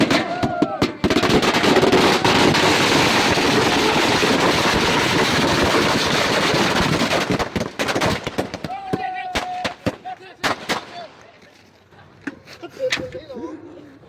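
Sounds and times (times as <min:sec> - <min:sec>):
firecrackers going off: 0:00.0 - 0:11.3.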